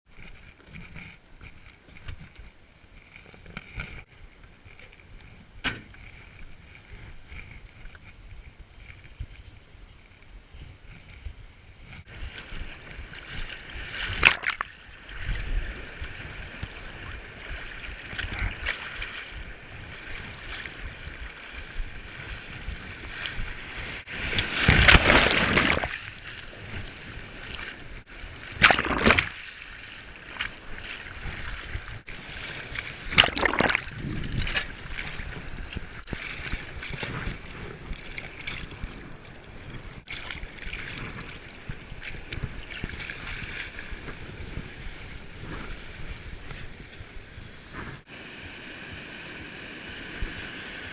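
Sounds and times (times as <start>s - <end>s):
ocean waves splashing on shore: 12.0s - 50.9s.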